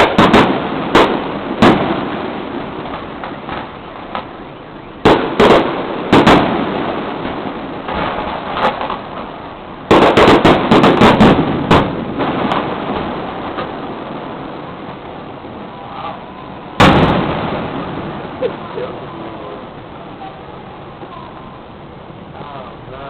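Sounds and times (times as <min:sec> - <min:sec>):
fireworks bangs: 0:00.0 - 0:23.0
rumbling echo: 0:00.0 - 0:23.0.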